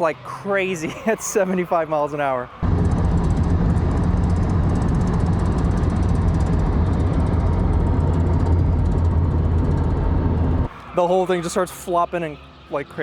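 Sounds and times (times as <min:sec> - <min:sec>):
road and wind noise: 0:00.0 - 0:13.0
fast even flutter of splitter: 0:02.6 - 0:10.7
car engine drone: 0:02.6 - 0:13.0.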